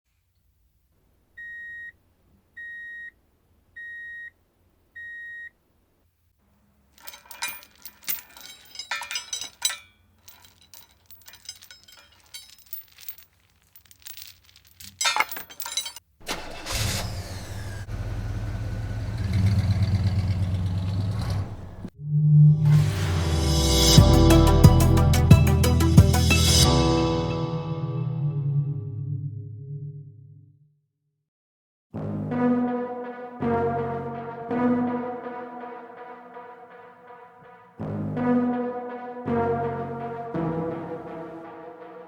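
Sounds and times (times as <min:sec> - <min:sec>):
clicking and rattling: 0:07.0 - 0:16.0
car engine starting and running: 0:16.2 - 0:22.0.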